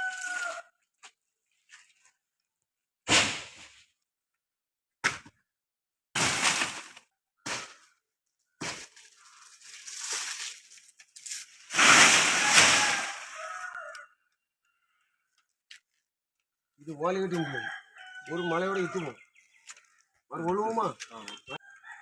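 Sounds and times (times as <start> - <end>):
palm fronds crashing to ground: 6.2 - 7.0, 8.6 - 13.6
rustling of fronds: 8.7 - 14.0.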